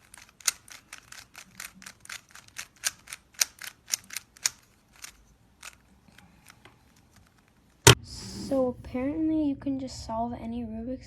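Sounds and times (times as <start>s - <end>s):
puzzle cube plastic clicks: 0.0s - 7.9s.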